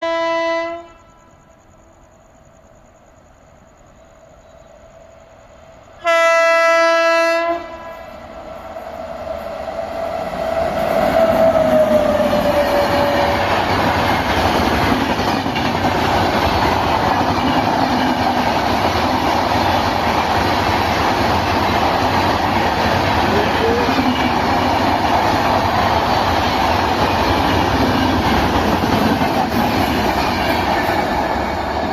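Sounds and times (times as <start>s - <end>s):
locomotive horn blast: 0.0s - 1.2s, 6.0s - 8.1s
train wheel noise and rail clatter: 1.3s - 31.9s.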